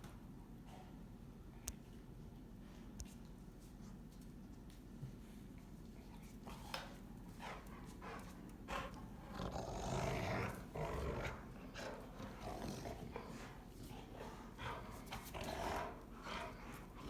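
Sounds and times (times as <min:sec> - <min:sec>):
dogs growling: 0:07.5 - 0:17.0.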